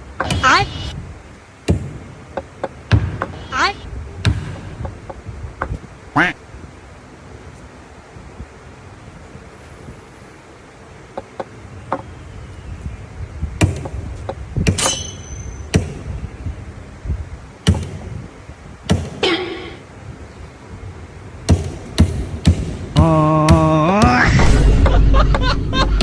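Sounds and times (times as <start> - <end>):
sharp knocks and bangs: 0.2 - 1.0, 1.6 - 5.8, 13.6 - 16.3, 17.6 - 18.3, 18.9 - 19.7, 21.5 - 26.0
brief squeak: 14.8 - 15.7.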